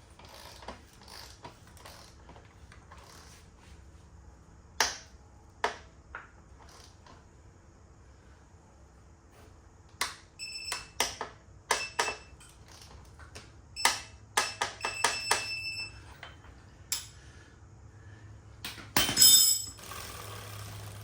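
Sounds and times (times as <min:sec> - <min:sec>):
metal hand tools clinking: 0:19.0 - 0:19.8.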